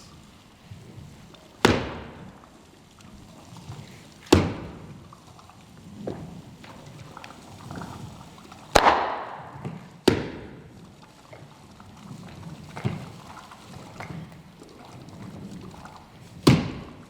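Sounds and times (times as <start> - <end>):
loud sharp bangs with echo: 8.8 - 10.4.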